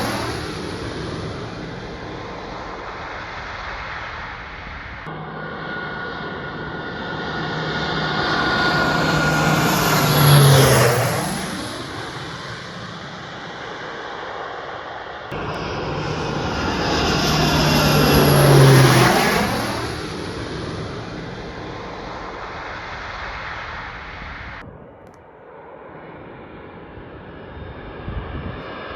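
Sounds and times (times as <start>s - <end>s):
airplane flying low past: 0.0s - 28.9s.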